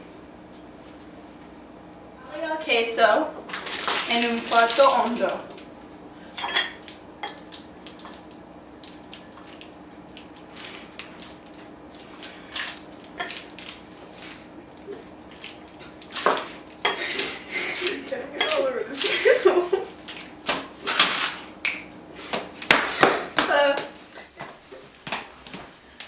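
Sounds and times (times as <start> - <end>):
faint steady hum: 0.0 - 26.0
dishes and utensils clinking: 6.4 - 7.4, 16.8 - 18.8.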